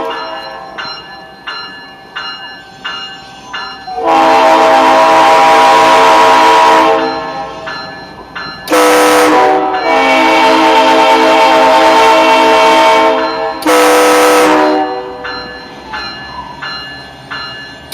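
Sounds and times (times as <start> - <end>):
locomotive air horn blast: 4.0 - 7.1, 8.7 - 15.2
car horn honk: 8.7 - 15.0.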